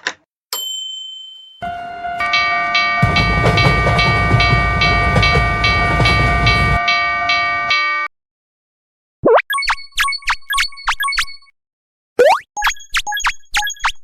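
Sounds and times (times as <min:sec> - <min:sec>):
railroad crossing bell ringing: 0:00.6 - 0:08.1
train rumbling past: 0:01.6 - 0:07.7.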